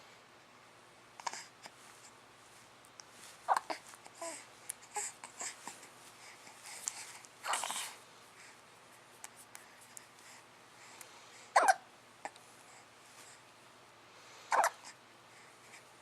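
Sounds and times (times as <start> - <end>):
sharp hiccup: 11.6 - 11.9, 14.5 - 14.8.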